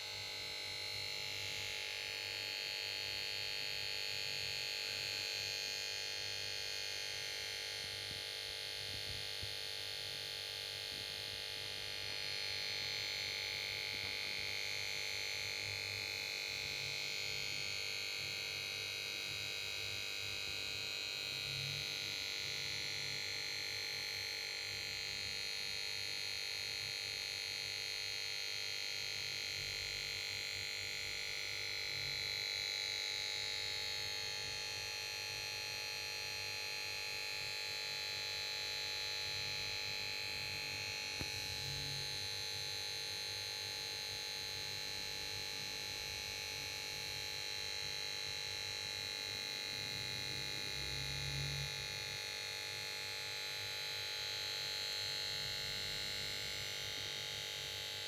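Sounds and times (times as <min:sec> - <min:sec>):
high-pitched electronic whine: 0:36.9 - 0:42.6.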